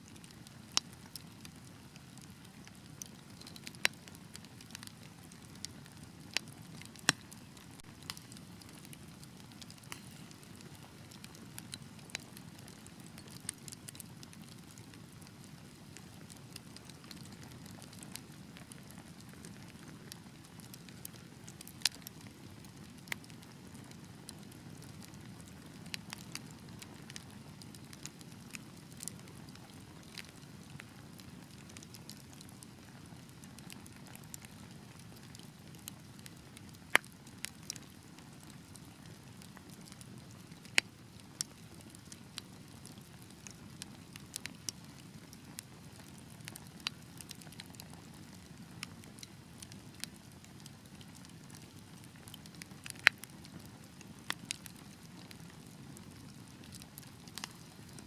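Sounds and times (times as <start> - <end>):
fire crackling: 0.1 - 58.0
fire pops: 3.4 - 4.0, 6.3 - 13.7.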